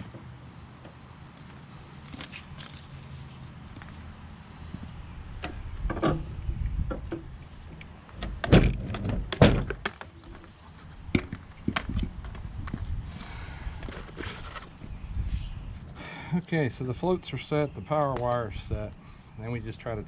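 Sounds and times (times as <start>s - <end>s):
equipment knocks and thuds: 8.2s - 10.0s.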